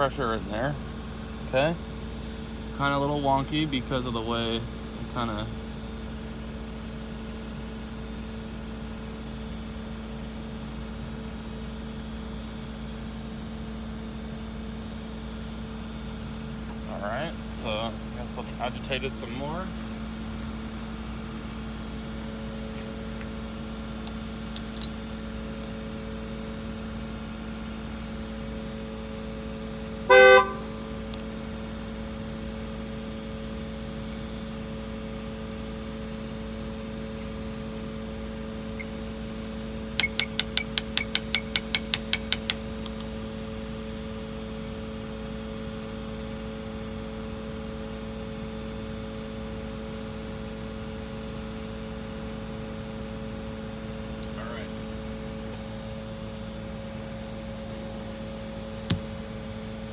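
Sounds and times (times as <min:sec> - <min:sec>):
car horn honk: 0:30.1 - 0:31.1
sharp high chirps: 0:40.0 - 0:42.5.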